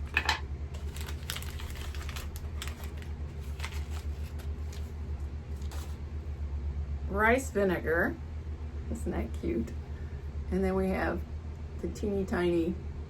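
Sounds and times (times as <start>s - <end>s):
plastic pieces and packaging clicking: 0.0s - 4.9s
steady low hum: 0.0s - 13.0s.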